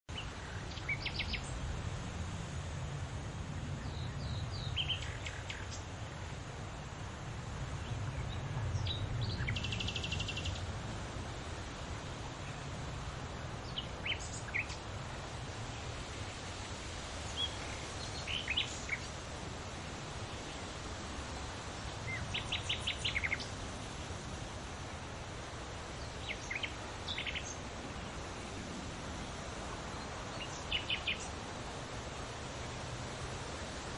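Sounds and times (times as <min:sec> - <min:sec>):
wind through leaves: 0:00.0 - 0:33.9
birds chirping: 0:00.1 - 0:01.6, 0:13.6 - 0:14.9, 0:15.8 - 0:19.2, 0:21.8 - 0:23.6, 0:25.8 - 0:28.3, 0:29.9 - 0:31.4.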